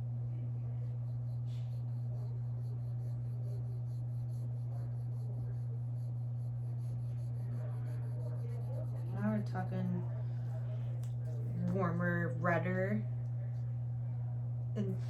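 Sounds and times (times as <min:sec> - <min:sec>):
low electrical hum: 0:00.0 - 0:15.0
faint scratching and rubbing: 0:00.6 - 0:11.8.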